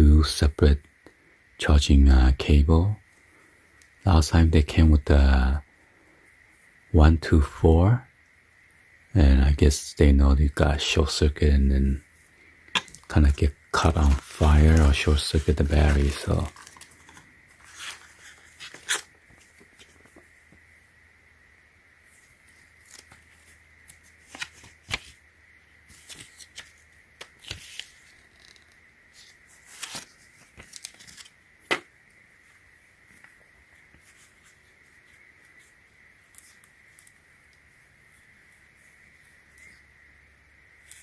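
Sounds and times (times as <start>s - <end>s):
faint high-pitched whine: 0.0s - 41.0s
hands handling small items: 12.7s - 20.2s, 29.6s - 31.9s.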